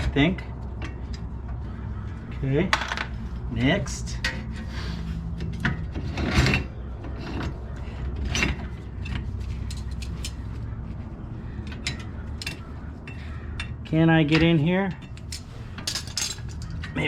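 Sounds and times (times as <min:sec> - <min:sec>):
hand tools clicking on metal: 0:11.6 - 0:17.0.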